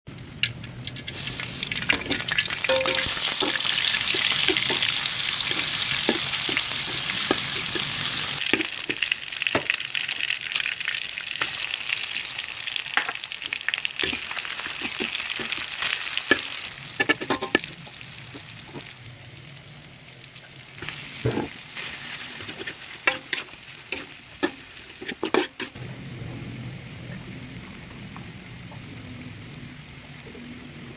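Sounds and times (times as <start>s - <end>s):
food sizzling in hot oil: 0.1s - 25.8s
spatula scraping pan: 1.9s - 9.0s, 14.0s - 18.9s, 20.8s - 25.8s.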